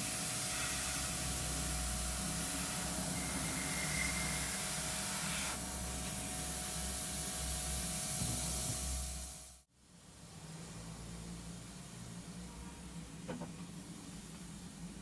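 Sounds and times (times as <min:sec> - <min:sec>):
airbrush spraying hiss: 0:00.0 - 0:09.7.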